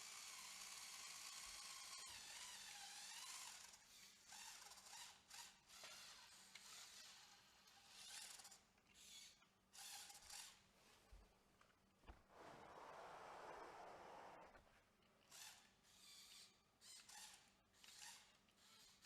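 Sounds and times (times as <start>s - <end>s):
small electric motors whining: 0.0s - 10.6s, 15.3s - 19.0s.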